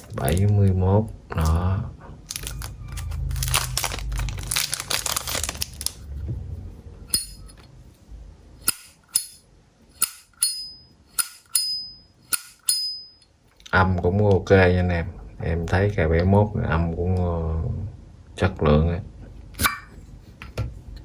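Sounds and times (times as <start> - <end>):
rustling: 2.3 - 8.0
metallic ping: 7.1 - 7.6, 8.6 - 9.4, 10.0 - 13.3.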